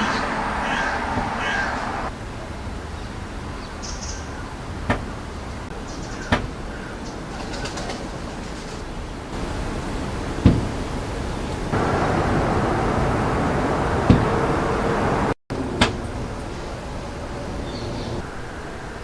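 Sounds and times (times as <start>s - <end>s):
bird chirp: 2.9s - 4.6s, 5.7s - 7.9s, 17.4s - 18.2s
sharp knocks: 6.2s - 6.5s, 10.4s - 10.8s, 14.0s - 14.4s.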